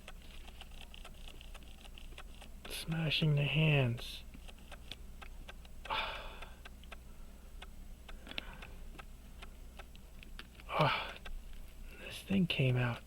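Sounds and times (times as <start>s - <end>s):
person sniffing: 5.9s - 6.6s.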